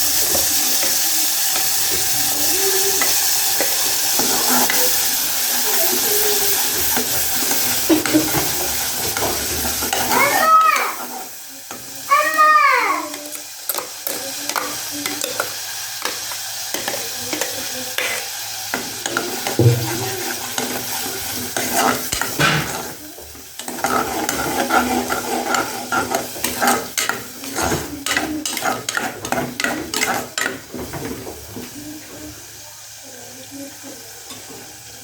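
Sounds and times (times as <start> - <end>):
metal spoon scraping a pan: 0.0 - 11.9, 13.1 - 31.3
food sizzling in a pan: 0.0 - 35.0.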